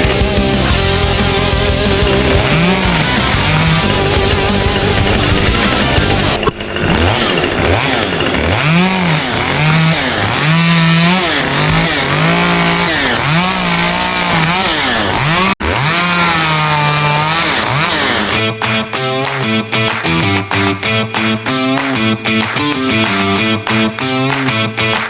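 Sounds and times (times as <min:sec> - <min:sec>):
chainsaw revving: 0:00.0 - 0:18.5.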